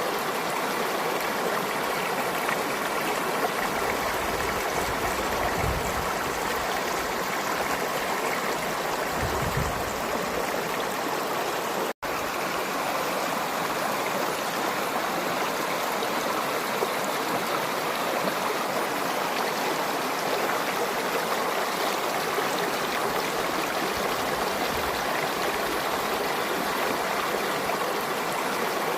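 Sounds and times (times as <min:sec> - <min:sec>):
stream water flowing: 0:00.0 - 0:28.9.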